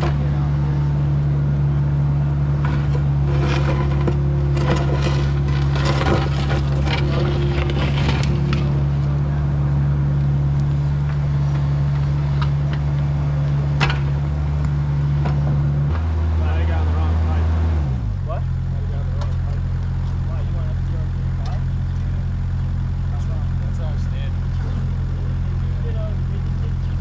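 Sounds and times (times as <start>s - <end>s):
excavator engine running: 0.0s - 27.0s
bucket scraping soil: 2.5s - 9.1s.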